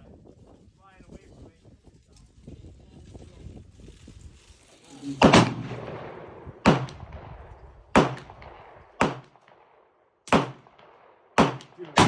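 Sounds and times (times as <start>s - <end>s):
pistol shots: 5.2s - 12.0s.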